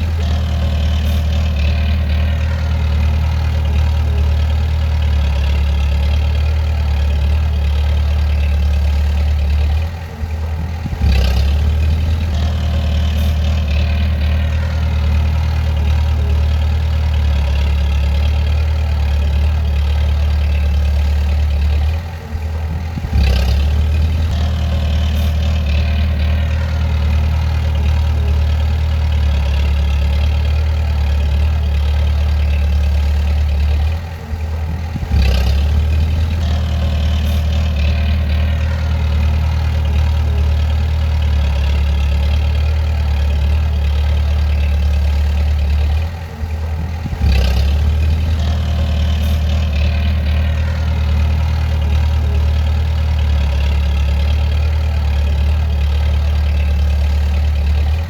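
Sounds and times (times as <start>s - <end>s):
diesel engine humming: 0.0s - 58.0s.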